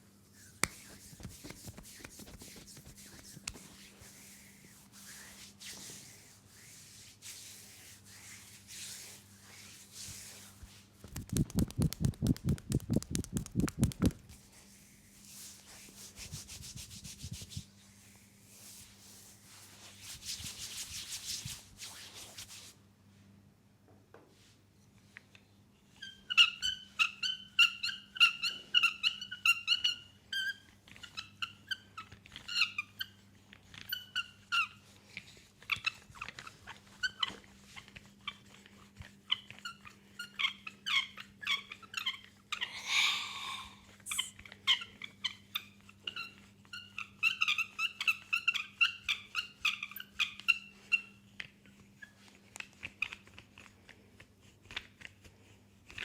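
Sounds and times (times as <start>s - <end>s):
hands rubbing oiled skin: 0.2s - 22.8s
wet squeaks from oily skin: 11.1s - 14.2s.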